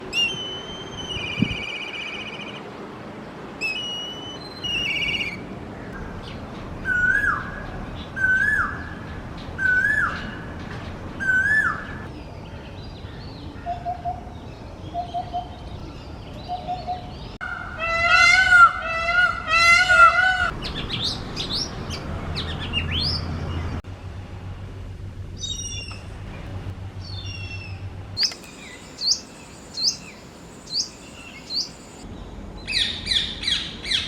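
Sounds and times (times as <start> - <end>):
loud whistled bird calls: 0.1 - 2.6, 3.6 - 5.4, 28.2 - 32.0
high buzzy bird chirps: 28.2 - 32.0.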